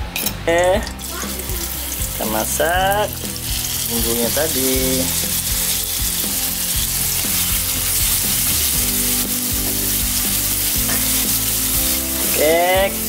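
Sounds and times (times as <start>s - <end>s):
stirring knocks: 0.9s - 13.0s
paste sizzling in hot oil: 1.0s - 13.0s.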